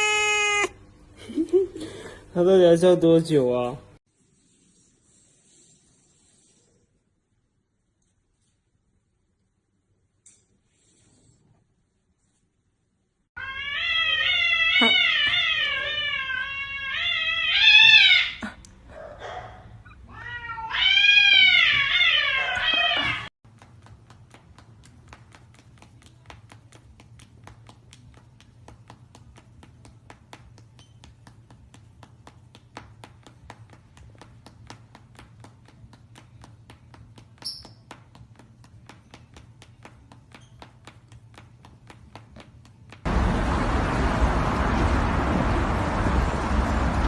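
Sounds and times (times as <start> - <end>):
cat meowing: 0.0 - 0.8, 13.4 - 18.4, 20.0 - 23.3
low hum: 43.1 - 47.0.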